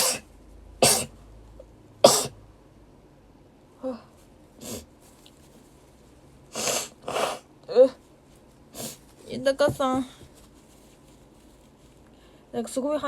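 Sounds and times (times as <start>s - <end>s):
woman sneezing: 0.0s - 1.1s, 2.1s - 2.4s.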